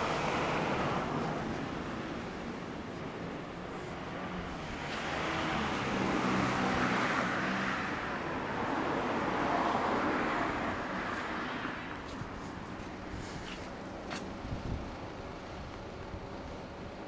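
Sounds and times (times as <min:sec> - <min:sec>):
vehicle passing by: 0:03.7 - 0:12.5.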